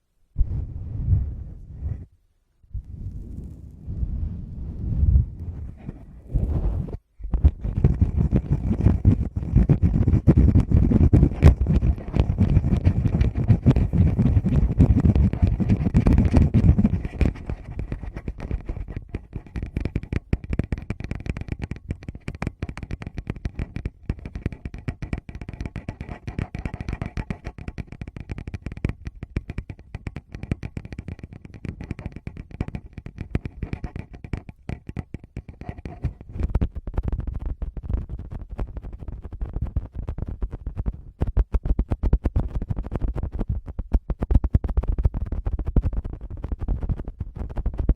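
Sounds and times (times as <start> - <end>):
low rumble: 0.4 - 2.1, 2.7 - 7.0
fingers tapping on microphones: 7.2 - 47.9.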